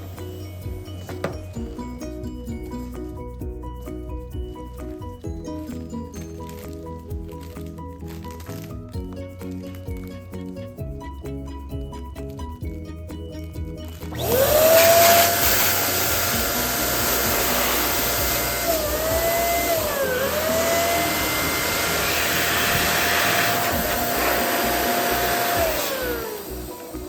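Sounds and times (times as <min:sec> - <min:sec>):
balloon inflator motor whine: 0:14.2 - 0:27.0.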